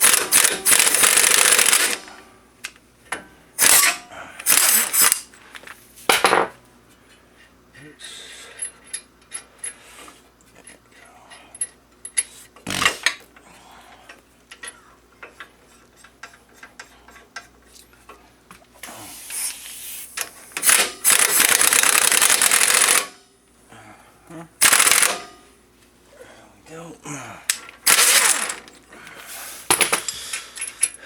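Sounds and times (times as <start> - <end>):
impact wrench running: 0.0 - 2.2, 3.6 - 5.3, 20.6 - 23.2, 24.6 - 25.4, 27.8 - 28.8.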